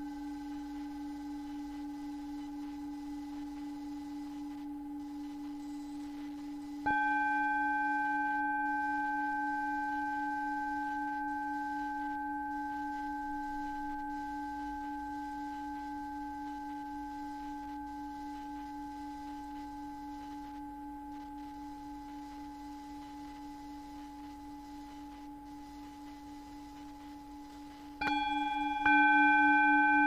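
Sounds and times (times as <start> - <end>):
gently pulsing drone tone: 0.0 - 30.0
struck bell ringing: 28.0 - 30.0.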